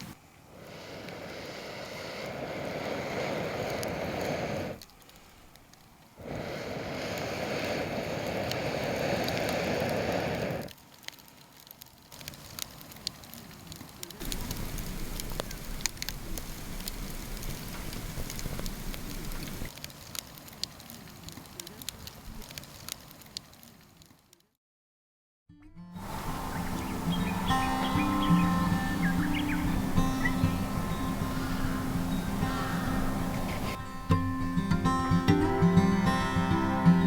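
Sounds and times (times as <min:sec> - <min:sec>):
campfire crackling and popping: 0:00.0 - 0:24.5, 0:26.0 - 0:37.0
steady rushing noise: 0:26.0 - 0:33.8.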